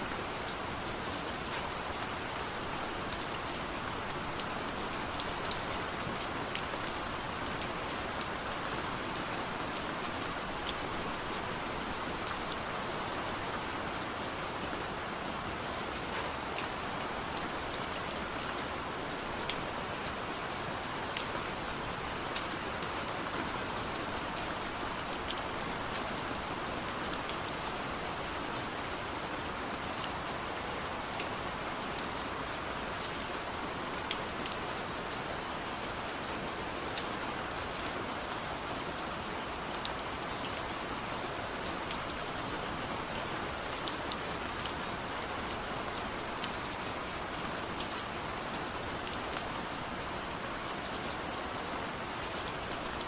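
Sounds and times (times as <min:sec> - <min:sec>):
steady rain hiss: 0:00.0 - 0:53.0.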